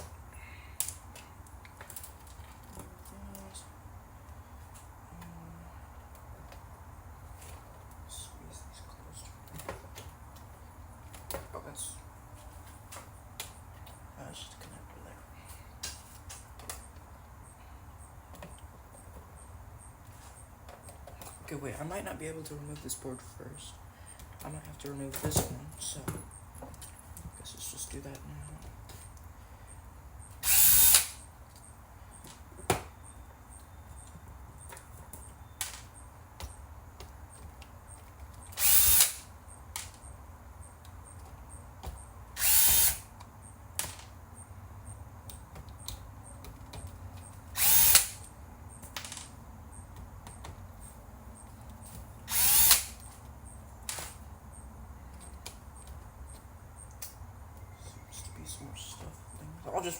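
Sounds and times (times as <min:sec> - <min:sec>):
cordless power screwdriver: 0:30.4 - 0:31.2, 0:38.6 - 0:39.3, 0:42.4 - 0:43.1, 0:47.6 - 0:48.3, 0:52.3 - 0:53.0.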